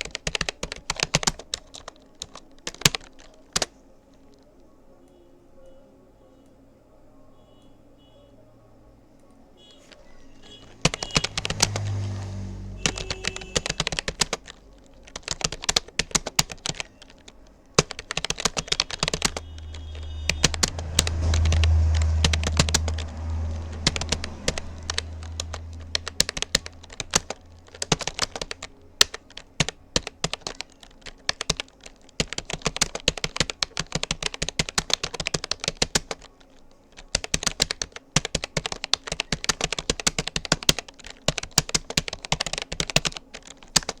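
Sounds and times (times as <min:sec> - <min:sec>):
fast keyboard typing: 0:00.0 - 0:04.4, 0:09.9 - 0:44.0
low rumble: 0:19.3 - 0:27.7.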